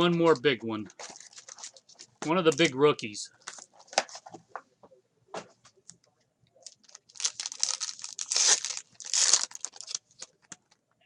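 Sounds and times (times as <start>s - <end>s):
wrapper tearing and crinkling: 1.0s - 1.8s, 6.6s - 10.8s.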